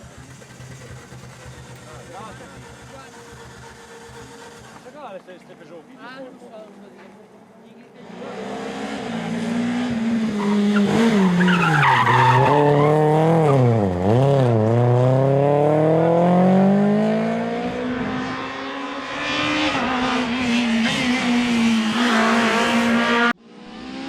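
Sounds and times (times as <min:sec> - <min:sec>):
rally car engine revving: 0:08.0 - 0:24.0
tyre squeal: 0:10.3 - 0:13.7.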